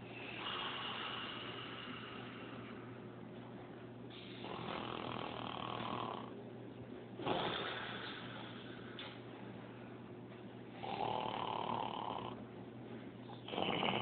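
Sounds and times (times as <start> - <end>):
person snoring: 0.2 - 2.6, 4.3 - 6.3, 7.2 - 8.6, 10.8 - 12.4, 13.4 - 14.0.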